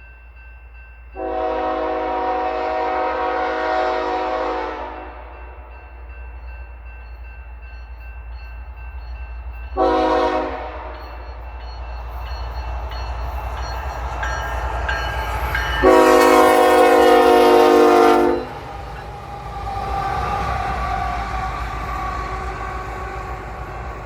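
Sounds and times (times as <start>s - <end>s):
locomotive horn blasts: 1.2s - 5.3s, 9.8s - 11.1s, 15.8s - 18.6s.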